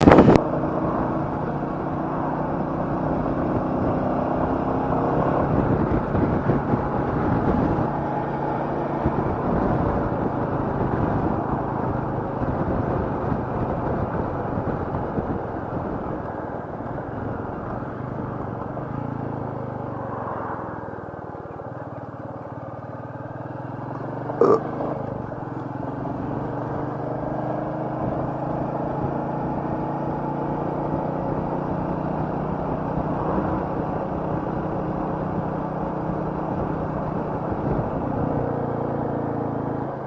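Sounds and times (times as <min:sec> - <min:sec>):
motorcycle engine running: 0:00.0 - 0:40.0
wind and road noise: 0:00.0 - 0:40.0.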